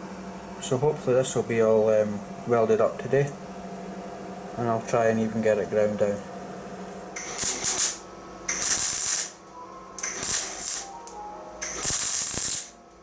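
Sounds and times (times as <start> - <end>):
welder crackling: 7.2 - 12.8.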